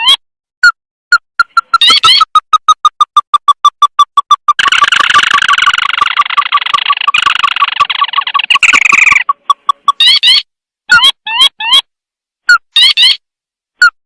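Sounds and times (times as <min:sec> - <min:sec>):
dense chattering: 0:01.4 - 0:10.3
bird call piping notes: 0:04.5 - 0:10.4.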